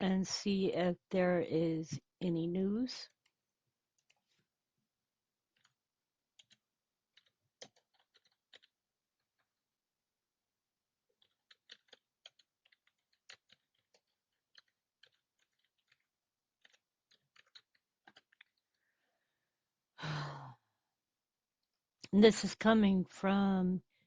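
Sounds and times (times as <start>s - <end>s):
faint keyboard typing: 5.5s - 9.6s, 11.1s - 19.0s.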